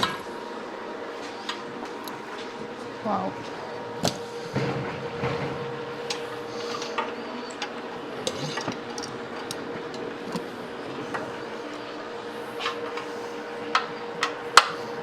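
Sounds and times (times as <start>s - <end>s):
workshop hum: 0.0s - 15.0s
metal tools clinking: 6.6s - 10.5s.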